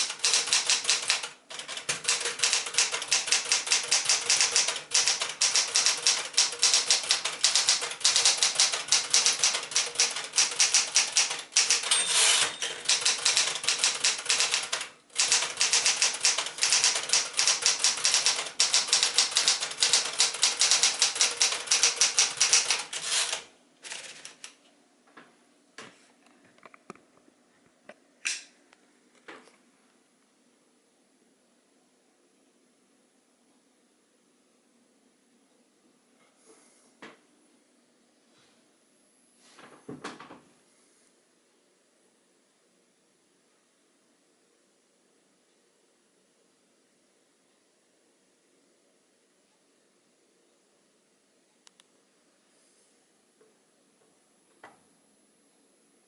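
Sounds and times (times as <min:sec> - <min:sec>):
manual typewriter typing: 0:00.0 - 0:24.6.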